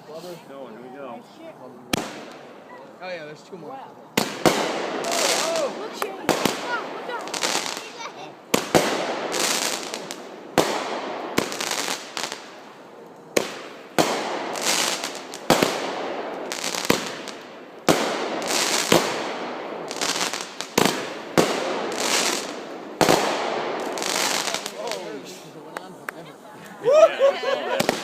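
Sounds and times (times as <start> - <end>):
fireworks bangs with crackle: 1.9 - 2.7, 4.1 - 25.4, 27.7 - 28.0.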